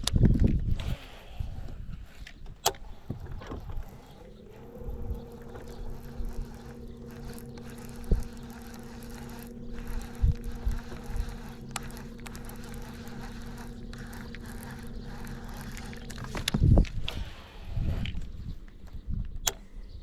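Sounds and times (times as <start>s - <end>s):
electric motor humming: 0.6s - 20.0s
sharp ticks: 2.6s - 17.0s.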